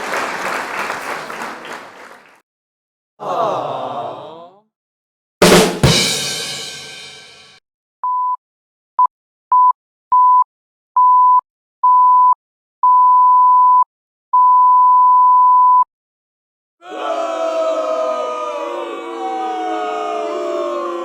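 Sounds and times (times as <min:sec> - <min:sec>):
censor bleep: 0:11.0 - 0:15.9.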